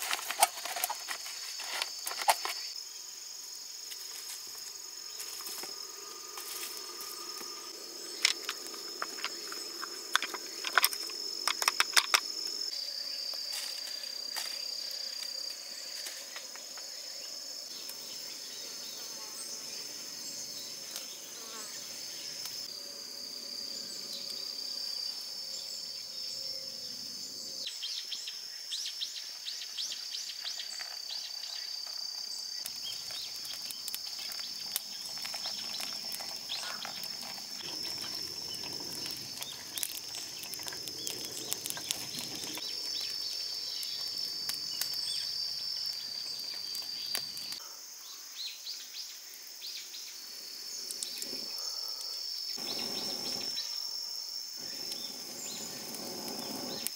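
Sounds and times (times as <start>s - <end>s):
insects trilling: 0.0s - 56.9s
sharp crackles and ticks: 32.6s - 47.6s.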